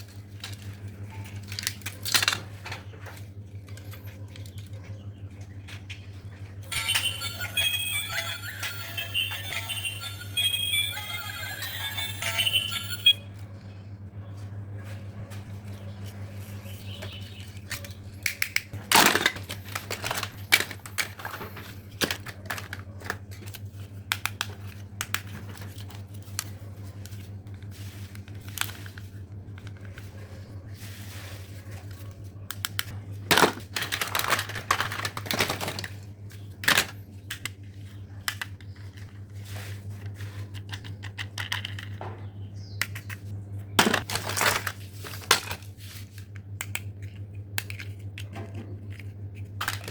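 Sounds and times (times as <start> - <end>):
steady low hum: 0.0 - 49.9
crinkling rustles: 33.3 - 36.9, 44.0 - 46.3
toys clicking and knocking: 40.5 - 42.2.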